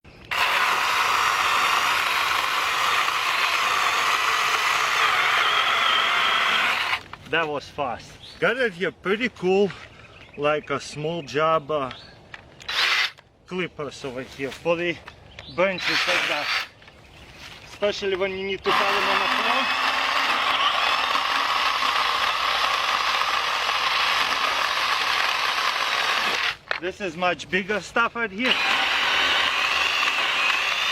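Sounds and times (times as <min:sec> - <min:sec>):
mini chainsaw cutting branch: 0:00.3 - 0:07.1, 0:12.6 - 0:13.2, 0:15.8 - 0:16.8, 0:18.6 - 0:26.8, 0:28.4 - 0:30.9.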